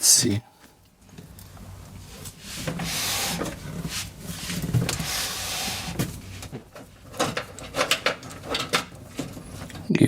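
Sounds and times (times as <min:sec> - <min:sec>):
low steady hum: 0:00.0 - 0:02.6.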